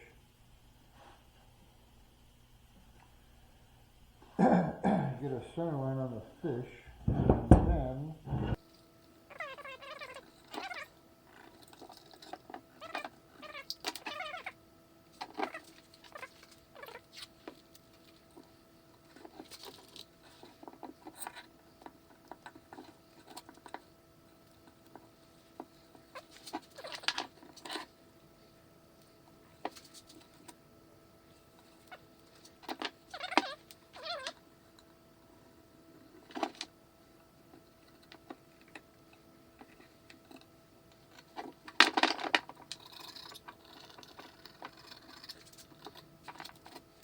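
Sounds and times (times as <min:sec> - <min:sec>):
electrical hum: 0:00.0 - 0:47.0
wooden block shifted on bench: 0:07.0 - 0:08.6.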